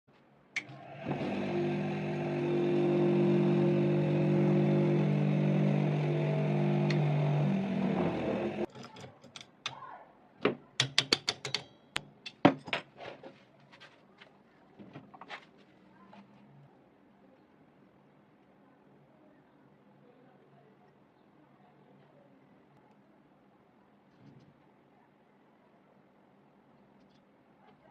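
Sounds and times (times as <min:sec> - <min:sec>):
bench grinder motor humming: 0:00.6 - 0:08.7
sharp clicks and knocks: 0:10.5 - 0:12.7.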